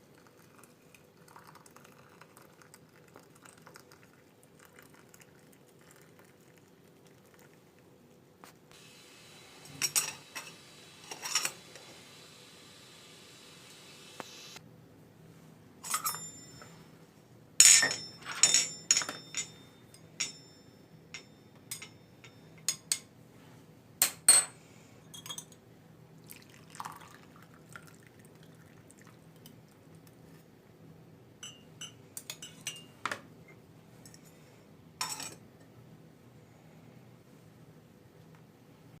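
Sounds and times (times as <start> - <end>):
glass clinking and knocking: 17.6 - 20.6, 31.4 - 32.9, 35.0 - 35.4.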